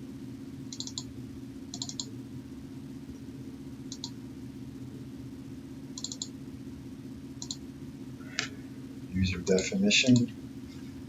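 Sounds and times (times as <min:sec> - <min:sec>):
low electrical hum: 0:00.0 - 0:11.0
computer keys clicking: 0:00.7 - 0:01.1, 0:01.7 - 0:02.1, 0:03.9 - 0:04.2, 0:06.0 - 0:06.3, 0:07.4 - 0:07.6.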